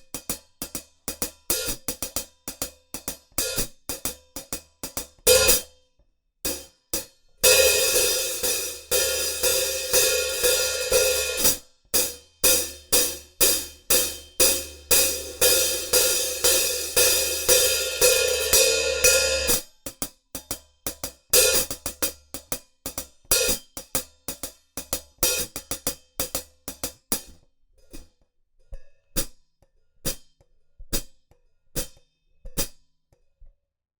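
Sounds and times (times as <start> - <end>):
hi-hat cymbals struck with drumsticks: 0.0 - 5.7, 6.5 - 27.3.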